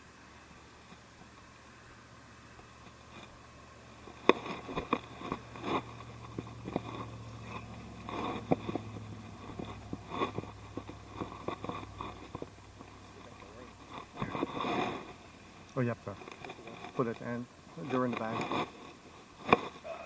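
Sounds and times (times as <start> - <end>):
steady low hum: 0.0 - 19.9
clicks knocks and scraping: 4.0 - 15.2, 16.1 - 19.9.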